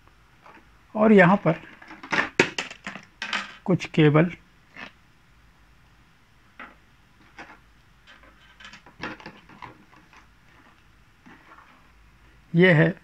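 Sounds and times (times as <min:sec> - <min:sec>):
small items clicking and rustling: 0:01.5 - 0:03.6, 0:06.6 - 0:11.8.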